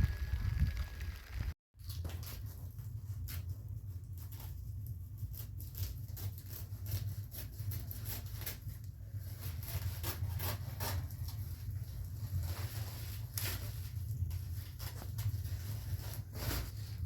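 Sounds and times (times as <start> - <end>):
steady low hum: 0.0 - 1.6.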